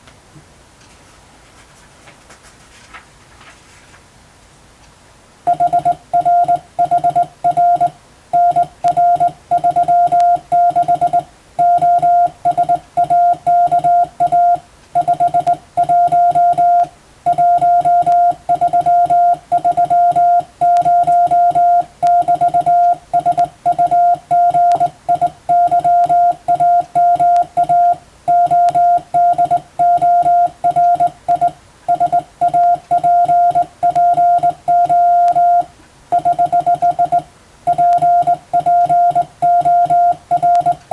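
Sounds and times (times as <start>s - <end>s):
morse code beeps: 5.5s - 40.9s.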